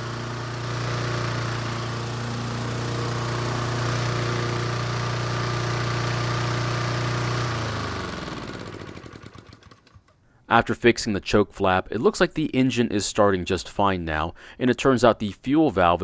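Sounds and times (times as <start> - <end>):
lawn mower engine running: 0.0 - 10.2.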